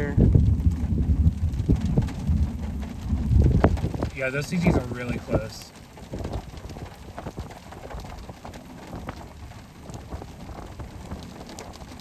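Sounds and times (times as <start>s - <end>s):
low steady rumble: 0.0s - 12.0s
rain pattering: 0.0s - 12.0s
raindrops tapping: 0.0s - 12.0s.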